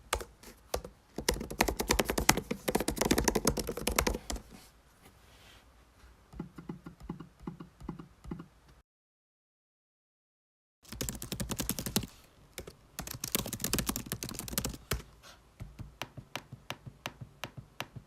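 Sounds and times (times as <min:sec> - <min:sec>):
laptop keyboard typing: 0:00.0 - 0:04.6, 0:10.9 - 0:15.1.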